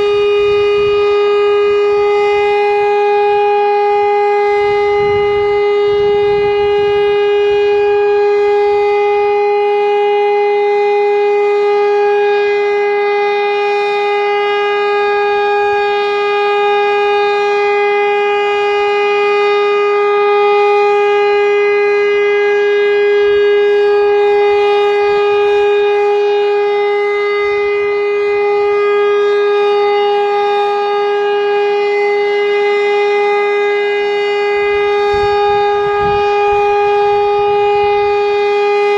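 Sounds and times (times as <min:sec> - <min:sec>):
air-raid siren steady tone: 0:00.0 - 0:38.9.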